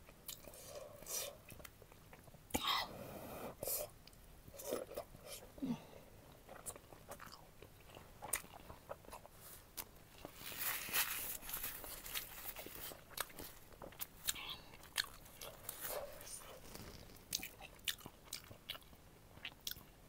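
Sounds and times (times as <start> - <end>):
person chewing food: 0.0 - 2.4, 3.6 - 5.6, 6.2 - 20.0.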